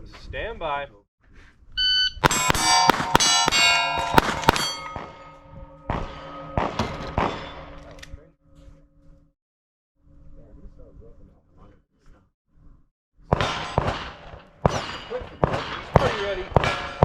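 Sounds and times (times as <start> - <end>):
shot timer beep: 1.8 - 2.3
rifle shots: 2.2 - 5.3, 5.9 - 7.8, 13.3 - 17.0
steel plates ringing: 2.2 - 7.8.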